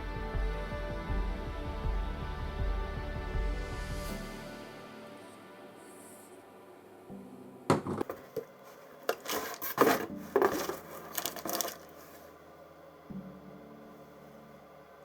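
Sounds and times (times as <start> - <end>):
knocks and clatters of parts: 7.7 - 12.0.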